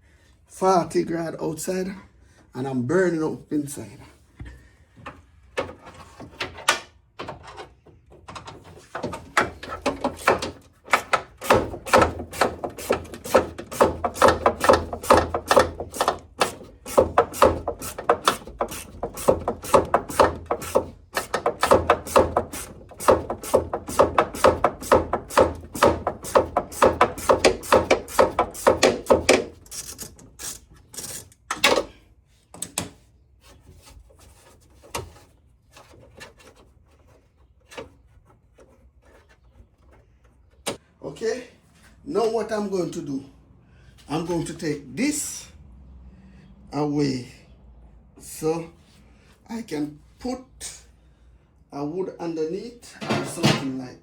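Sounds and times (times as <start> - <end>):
hand ratchet clicking: 9.8 - 31.2.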